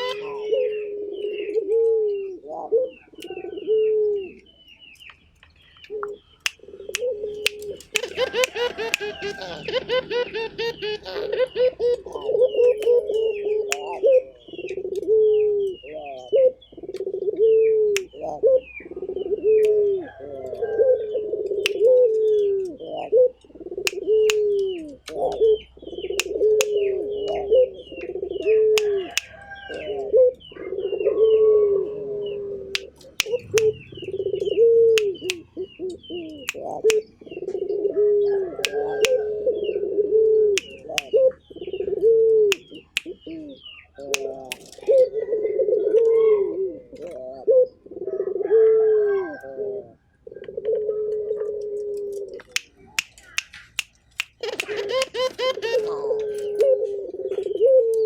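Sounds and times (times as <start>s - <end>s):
dove cooing: 0.0s - 4.5s, 5.9s - 53.7s, 54.3s - 58.0s
sharp clicks: 5.8s - 9.3s.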